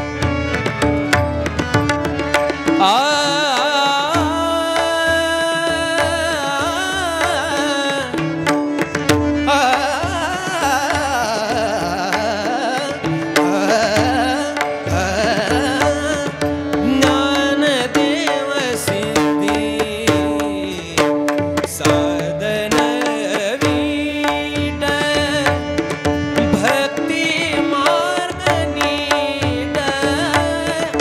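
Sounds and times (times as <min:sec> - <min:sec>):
sharp percussion: 0:00.0 - 0:31.0
wordless melismatic singing: 0:00.0 - 0:31.0.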